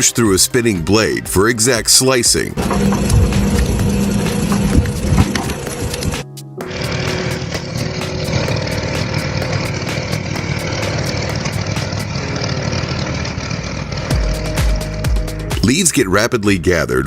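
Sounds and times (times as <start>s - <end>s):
fast even ticking: 2.6s - 14.8s
machine engine running: 2.6s - 15.0s.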